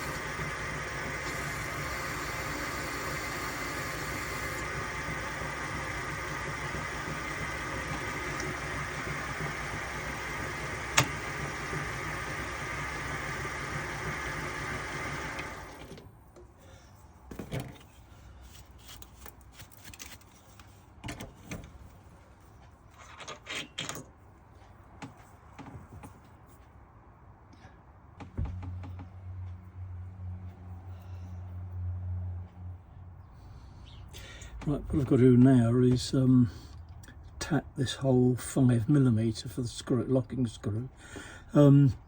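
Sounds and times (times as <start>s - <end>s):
low motor hum: 0.0s - 15.9s
machine tool motor running: 0.0s - 16.0s.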